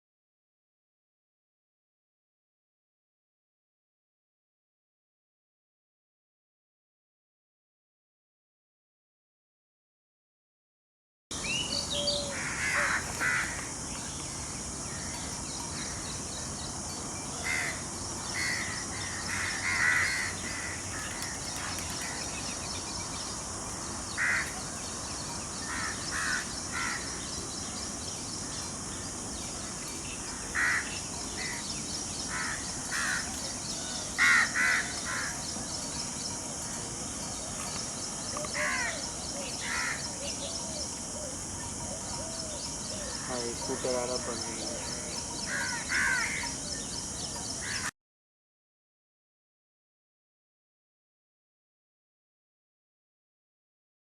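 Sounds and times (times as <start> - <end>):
steady high hiss: 11.4 - 47.9
crows cawing: 12.1 - 13.8, 17.4 - 17.8, 18.4 - 22.4, 24.1 - 24.8, 25.6 - 27.2, 30.3 - 31.6, 32.3 - 35.5, 38.4 - 39.0, 39.6 - 40.1, 44.8 - 46.6, 47.6 - 47.9.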